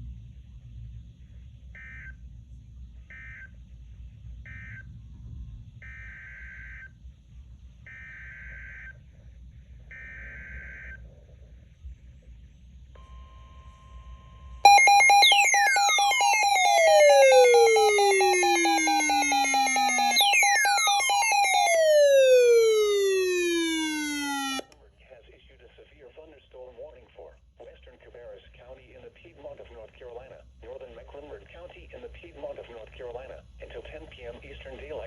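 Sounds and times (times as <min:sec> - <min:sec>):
electronic sound with falling sweeps: 0:14.7 - 0:24.6
warbling two-tone data chirps: 0:14.7 - 0:24.6.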